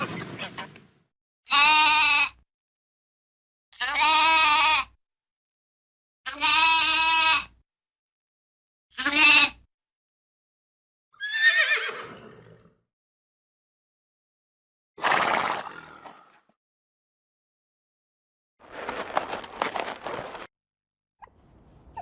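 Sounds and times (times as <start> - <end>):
lambs bleating: 1.5 - 2.4, 3.8 - 4.9, 6.3 - 7.5, 8.9 - 9.6
horse whinnying: 11.2 - 12.7.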